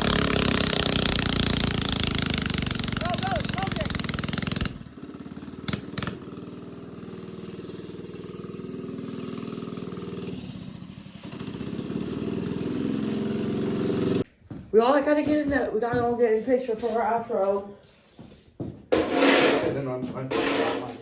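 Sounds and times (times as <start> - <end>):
mini bike engine running: 0.0 - 14.2.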